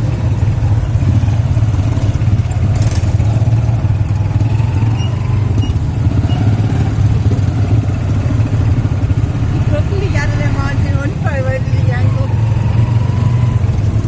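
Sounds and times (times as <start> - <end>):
motorcycle engine running: 0.0 - 14.0
brief rattle: 2.6 - 3.6.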